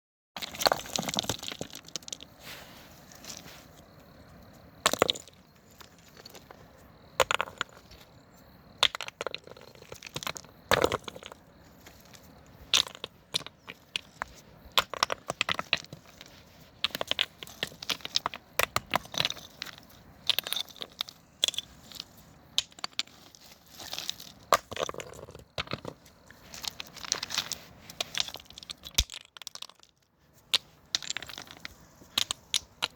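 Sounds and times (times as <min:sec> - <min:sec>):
pebbles clacking: 0:00.4 - 0:32.9.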